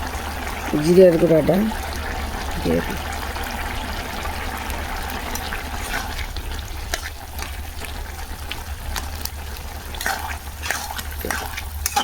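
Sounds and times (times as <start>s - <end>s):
fish sizzling in hot oil: 0.0s - 12.0s
low steady hum: 0.0s - 12.0s
spatula scraping a pan: 10.0s - 12.0s.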